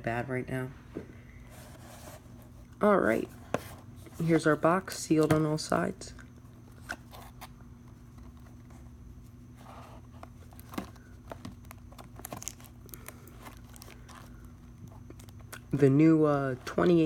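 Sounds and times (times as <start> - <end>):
cardboard box handling: 9.5 - 14.3.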